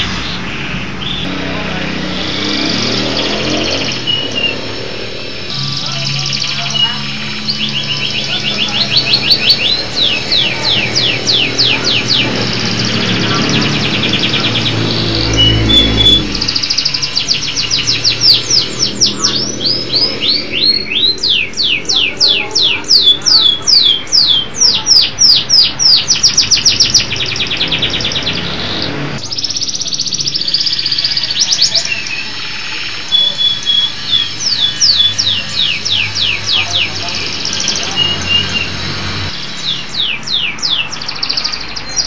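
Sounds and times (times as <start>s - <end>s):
canary singing trills: 0.0s - 42.0s
low rumble: 0.4s - 21.7s.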